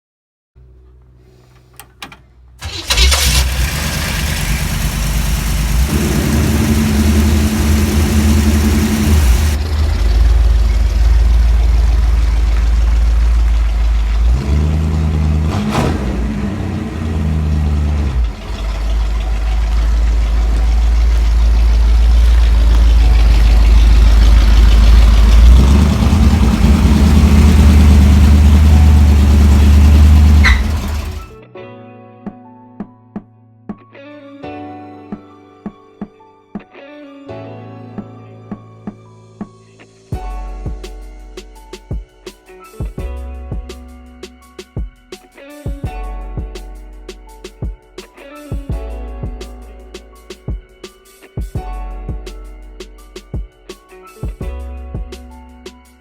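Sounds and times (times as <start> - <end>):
car engine starting and revving: 2.6 - 31.4.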